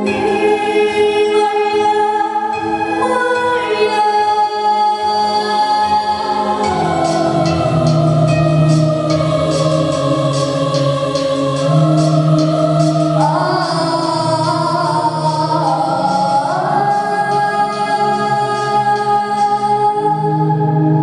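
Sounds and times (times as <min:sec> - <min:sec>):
choir-like held voices: 0:00.0 - 0:21.0
light ticking beat: 0:06.2 - 0:19.5.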